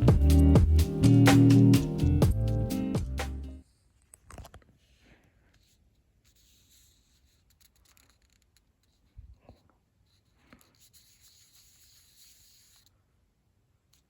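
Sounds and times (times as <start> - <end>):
light scratching and clicks: 5.5 - 12.9.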